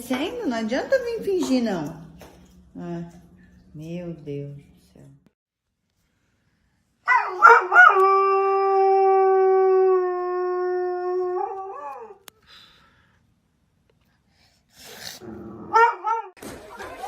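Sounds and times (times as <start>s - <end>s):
dog yelping: 7.1s - 8.0s
dog howling: 7.1s - 12.3s.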